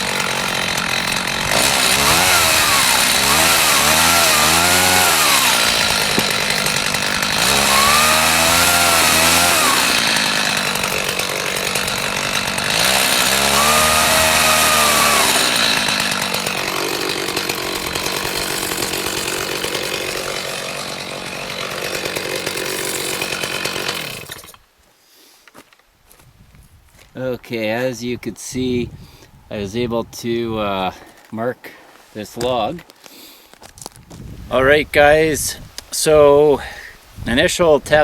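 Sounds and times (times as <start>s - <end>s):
chainsaw revving and cutting log: 0.0s - 24.6s.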